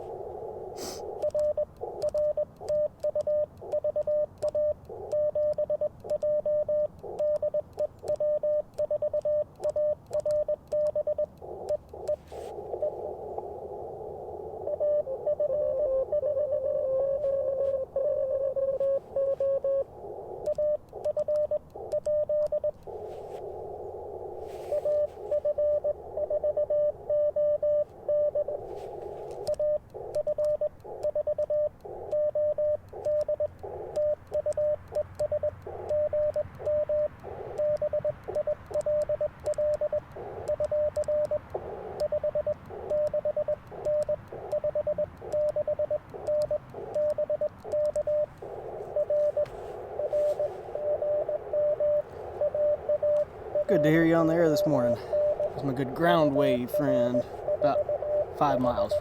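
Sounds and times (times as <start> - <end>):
radio band noise: 0.0 - 2.1, 11.4 - 38.4, 39.6 - 59.0
morse code tones: 0.0 - 13.2, 14.4 - 59.0.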